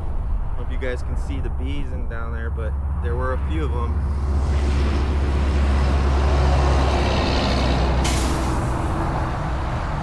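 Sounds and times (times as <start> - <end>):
vehicle passing: 2.5 - 10.0.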